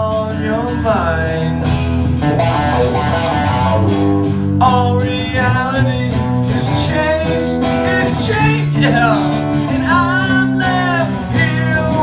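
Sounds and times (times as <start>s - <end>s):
acoustic guitar strumming: 0.0s - 12.0s
person singing: 4.6s - 12.0s.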